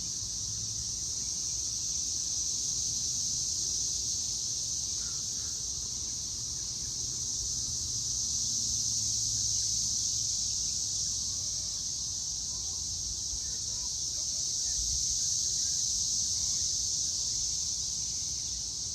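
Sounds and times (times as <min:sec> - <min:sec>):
cicadas droning: 0:00.0 - 0:18.9.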